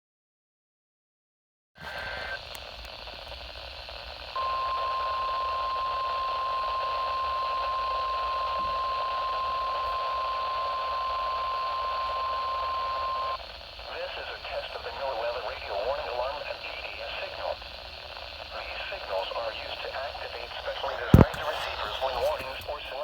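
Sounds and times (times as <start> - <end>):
radio static hiss: 1.8 - 23.0
steady warning alarm tone: 4.4 - 13.4.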